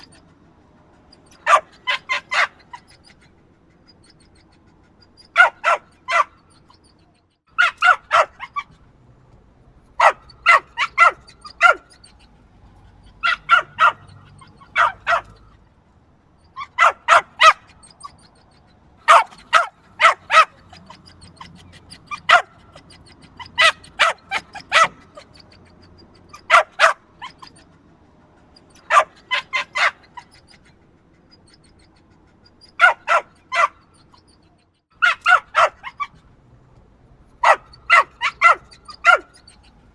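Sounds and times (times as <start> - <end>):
small dog barking: 1.3 - 2.9, 5.2 - 6.4, 7.5 - 8.8, 10.0 - 12.3, 13.1 - 15.6, 16.5 - 18.3, 19.0 - 25.6, 26.2 - 27.6, 28.7 - 30.4, 32.6 - 33.9, 35.0 - 36.2, 37.4 - 39.6.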